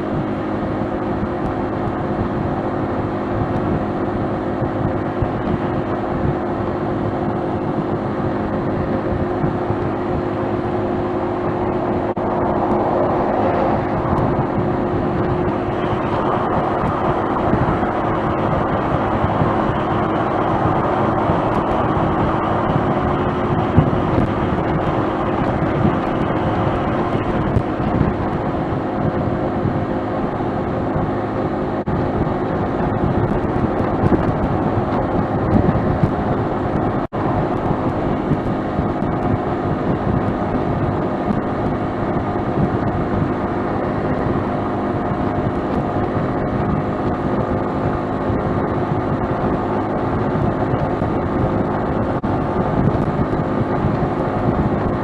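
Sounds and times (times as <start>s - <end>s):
scooter engine hum: 0.0s - 55.0s
wind and road rush: 0.0s - 55.0s.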